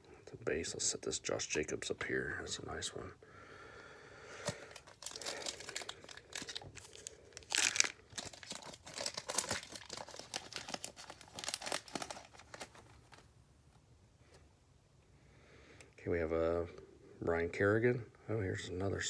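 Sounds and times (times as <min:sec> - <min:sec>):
foil wrapper tearing and crinkling: 0:04.4 - 0:13.3.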